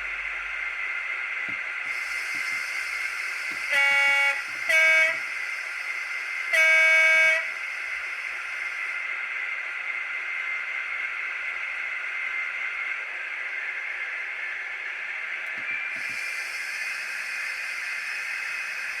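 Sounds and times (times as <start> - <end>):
thin hissy diesel engine drone: 0.0 - 19.0
horn blast: 3.5 - 5.4, 6.5 - 7.6.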